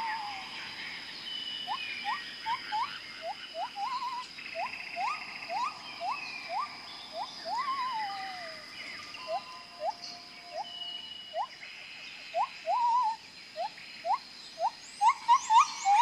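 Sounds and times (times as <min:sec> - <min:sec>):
wavering downward-sliding calls: 0:00.0 - 0:00.4, 0:01.7 - 0:08.6
high-pitched insect drone: 0:00.0 - 0:16.0
upward-sweeping whistled calls: 0:00.0 - 0:16.0.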